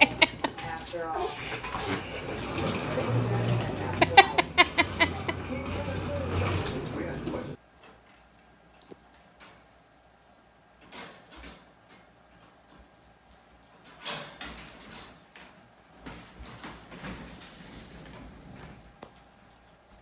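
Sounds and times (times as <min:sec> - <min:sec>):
rustling: 0:14.6 - 0:20.0.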